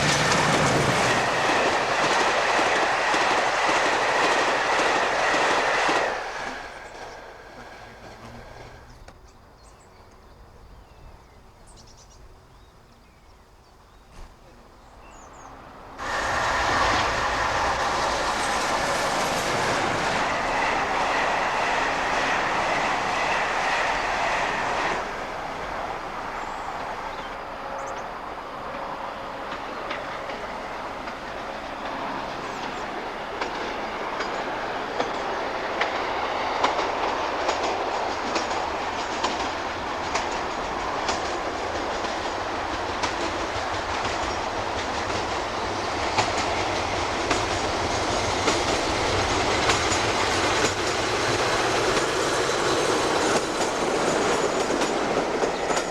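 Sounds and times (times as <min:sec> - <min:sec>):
train wheels rumbling on rail: 0:00.0 - 0:10.1, 0:14.0 - 0:55.9
wheels clicking over rail joints: 0:29.5 - 0:55.9.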